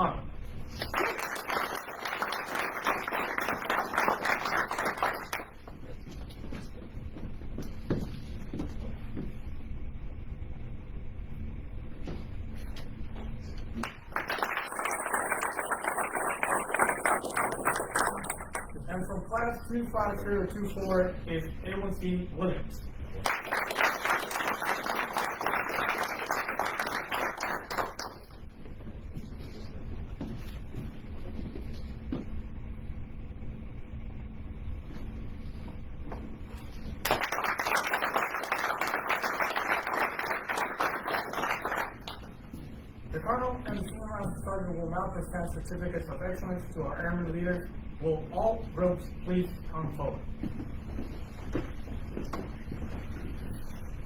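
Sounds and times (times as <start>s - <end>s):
low room rumble: 0.0s - 54.0s
audience applauding: 0.7s - 5.7s, 13.8s - 18.8s, 23.2s - 28.4s, 37.0s - 42.4s.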